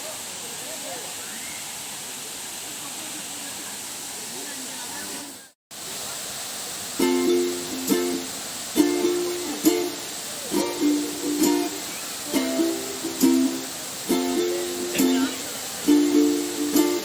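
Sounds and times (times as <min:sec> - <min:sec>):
steady hiss: 0:00.0 - 0:17.0
plucked string chords: 0:07.0 - 0:17.0.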